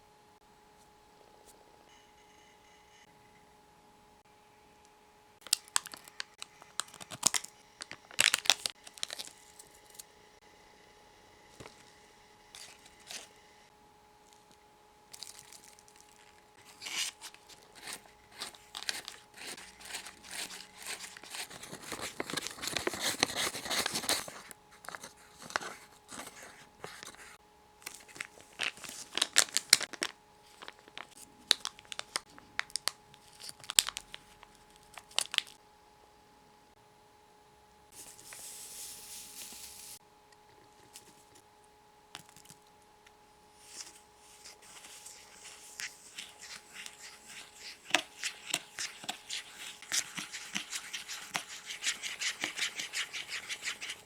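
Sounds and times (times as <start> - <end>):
packet tearing: 5.4 - 10.0, 15.2 - 35.6, 44.7 - 54.0
plastic packaging crinkling: 5.4 - 10.1, 14.3 - 35.6, 43.7 - 54.0.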